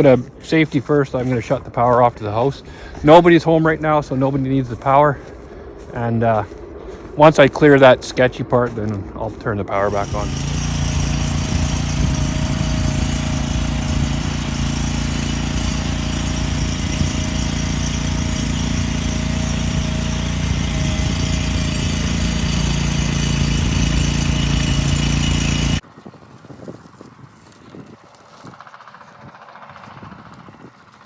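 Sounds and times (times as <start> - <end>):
trencher engine running: 0.0 - 3.2, 9.8 - 25.8, 28.1 - 31.0.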